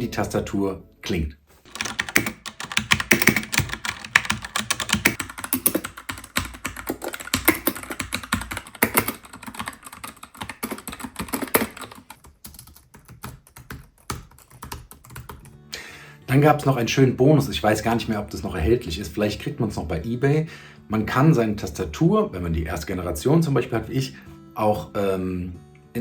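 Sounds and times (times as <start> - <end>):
typewriter keyboard key clicks: 1.7 - 12.0.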